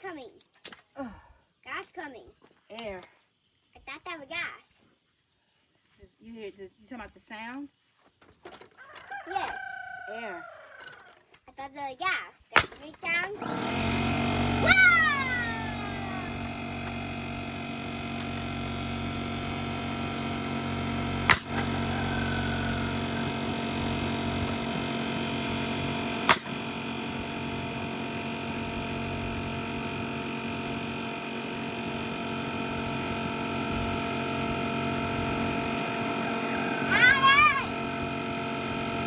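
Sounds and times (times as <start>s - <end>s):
nail gun firing into wood: 12.6s - 13.6s, 21.2s - 21.7s, 26.2s - 26.7s
air compressor humming: 13.0s - 39.0s.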